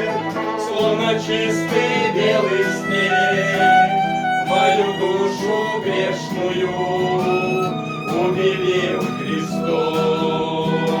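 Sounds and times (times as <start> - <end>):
violin melody: 0.0 - 11.0.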